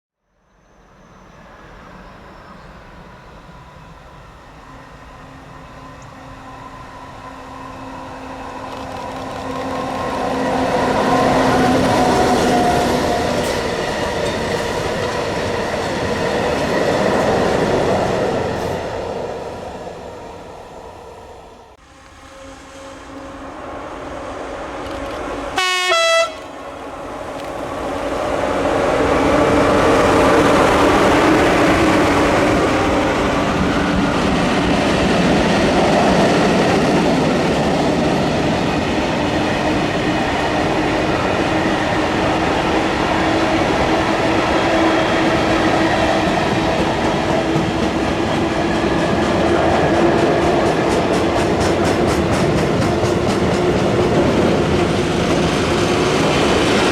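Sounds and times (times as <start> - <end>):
train wheels rumbling on rail: 1.2 - 56.9
train horn blast: 21.8 - 24.2, 25.5 - 26.6.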